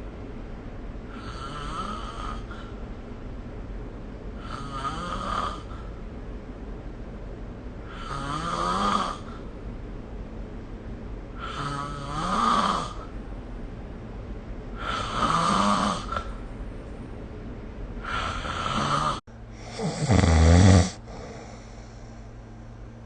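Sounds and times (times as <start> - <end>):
person snoring: 1.1 - 2.7, 4.4 - 5.9, 7.8 - 9.4, 11.4 - 13.1, 14.8 - 16.3, 18.0 - 22.1.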